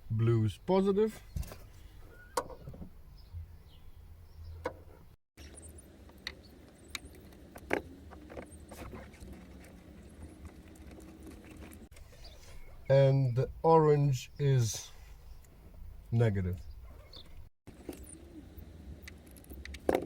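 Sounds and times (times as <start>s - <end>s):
wiring clicks and rustles: 6.1s - 12.1s.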